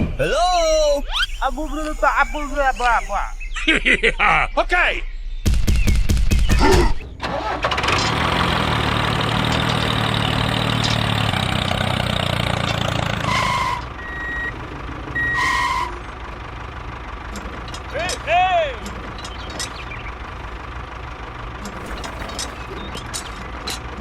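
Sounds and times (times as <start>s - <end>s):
short high beeps: 1.0s - 3.8s
small engine running: 7.4s - 24.0s.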